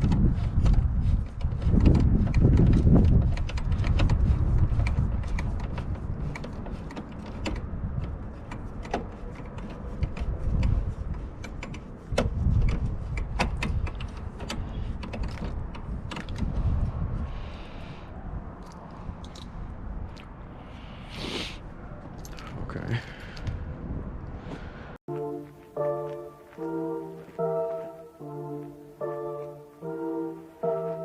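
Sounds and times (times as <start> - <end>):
hand tools clicking: 0.0 - 16.4.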